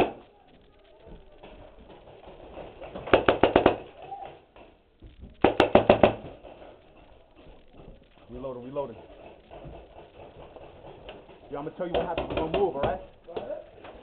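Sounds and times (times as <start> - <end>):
paintball marker firing: 3.0 - 4.0.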